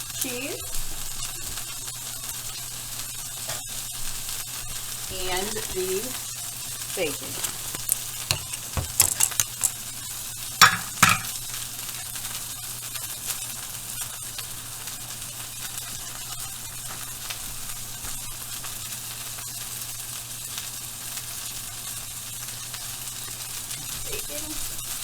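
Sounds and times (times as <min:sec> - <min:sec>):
burger patties sizzling in a pan: 0:00.0 - 0:25.0
utensils knocking: 0:07.8 - 0:09.8, 0:10.6 - 0:11.4.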